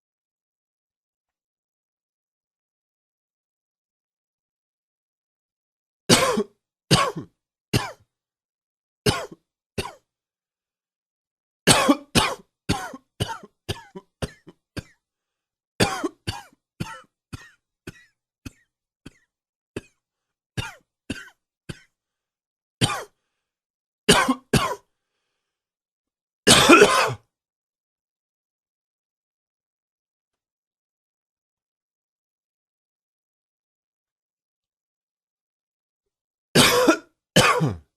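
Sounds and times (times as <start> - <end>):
man coughing harshly: 6.1 - 8.0, 9.1 - 10.0, 11.7 - 15.0, 15.8 - 19.2, 20.6 - 21.9, 22.8 - 23.2, 24.1 - 24.8, 26.5 - 27.2, 36.6 - 37.9.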